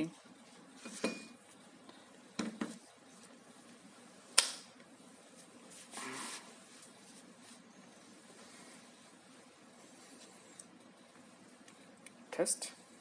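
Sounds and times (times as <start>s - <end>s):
brief scrape: 6.0s - 6.5s.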